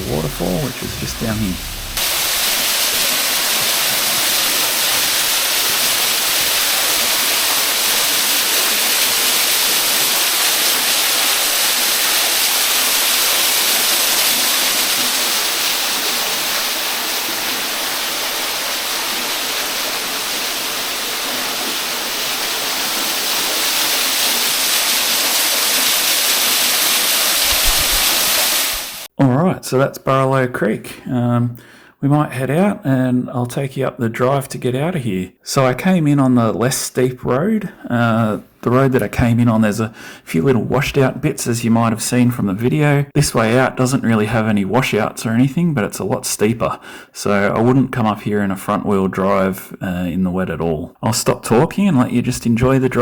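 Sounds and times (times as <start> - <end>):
small waterfall splashing: 0.0 - 29.1.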